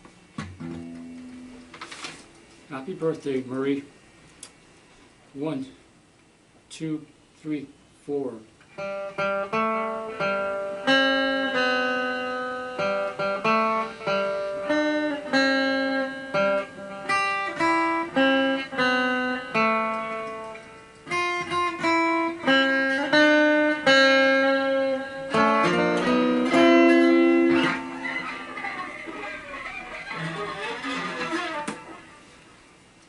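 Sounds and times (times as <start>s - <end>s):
solo guitar plucked melody: 0.4s - 1.8s, 8.7s - 32.4s.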